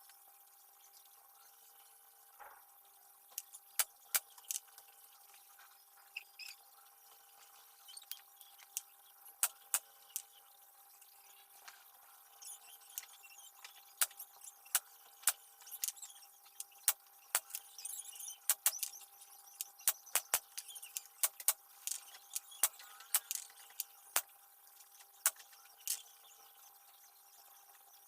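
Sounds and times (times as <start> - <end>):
clicks and taps of hard objects: 14.0 - 17.7, 18.5 - 19.0, 19.6 - 23.9.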